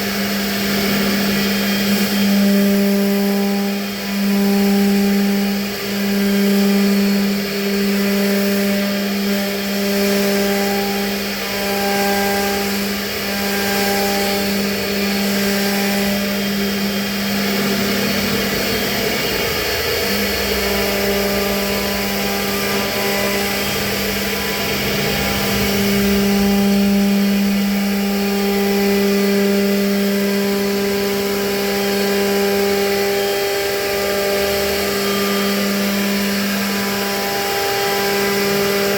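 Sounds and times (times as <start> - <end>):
router spindle humming: 0.0 - 38.9
rough cutting noise: 10.6 - 38.9.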